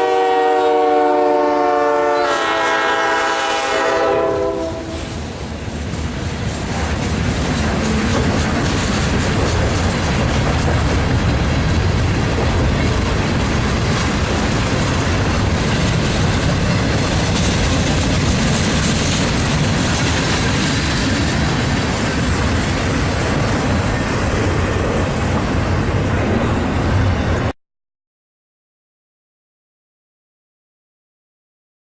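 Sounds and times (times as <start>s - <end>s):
train wheels on rails: 2.1s - 27.6s.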